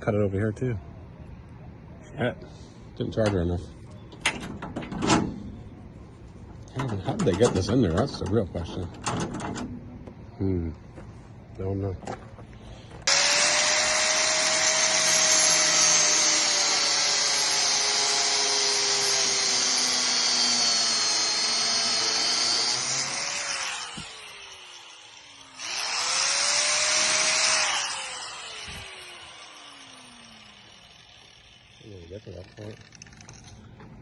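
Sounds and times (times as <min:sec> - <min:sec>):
angle grinder cutting metal: 0:13.1 - 0:33.4.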